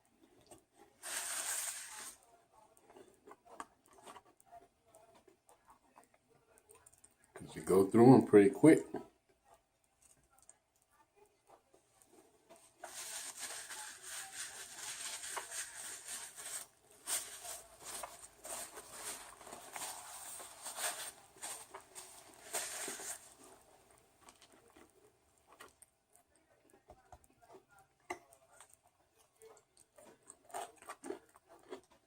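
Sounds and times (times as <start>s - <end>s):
food packaging crackling and rustling: 0.1s - 8.8s, 11.5s - 25.9s.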